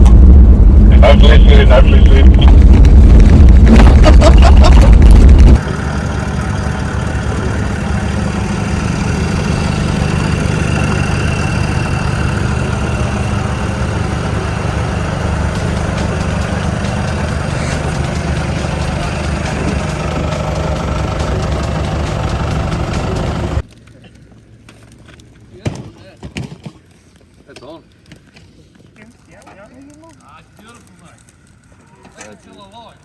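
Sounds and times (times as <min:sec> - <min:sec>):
loud low rumble: 0:00.0 - 0:23.6
engine idling: 0:00.0 - 0:23.7.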